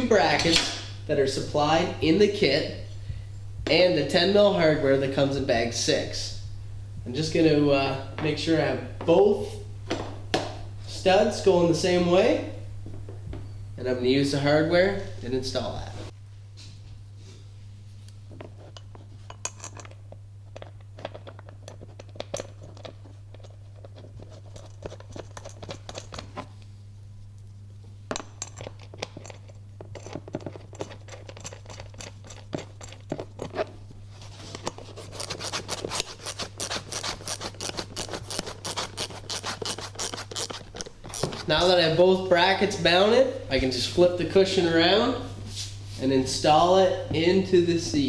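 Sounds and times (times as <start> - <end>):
steady low hum: 0.0 - 48.0
hand tools tapping metal parts: 28.1 - 33.8.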